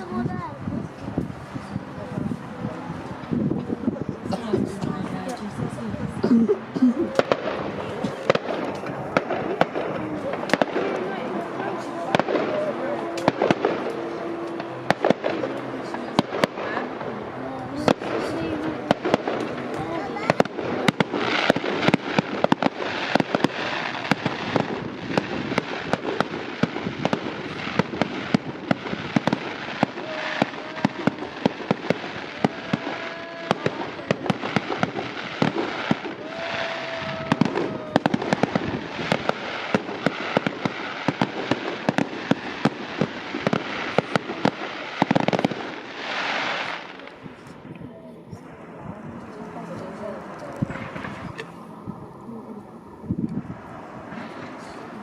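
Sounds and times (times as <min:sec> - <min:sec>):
fireworks crackling bangs: 0:00.0 - 0:55.0
firework whistling tones: 0:17.7 - 0:47.7.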